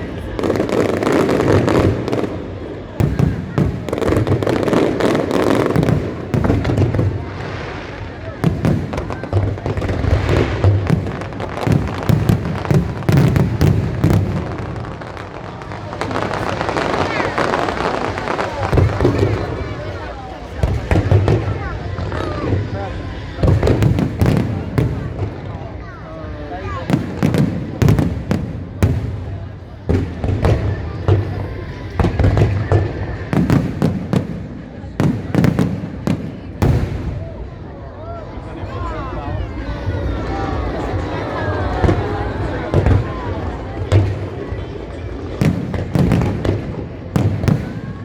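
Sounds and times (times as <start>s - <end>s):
fireworks bangs: 0.0s - 48.0s.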